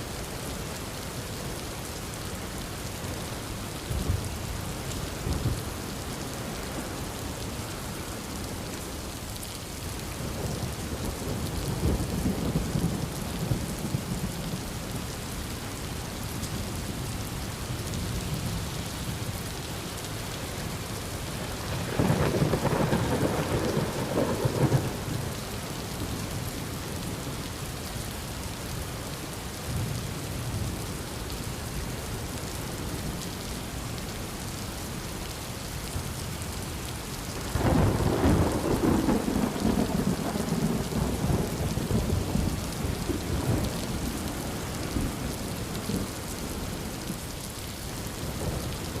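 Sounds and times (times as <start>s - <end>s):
heavy rain falling: 0.0s - 49.0s
thunder rumbling: 21.6s - 25.5s, 37.5s - 46.2s.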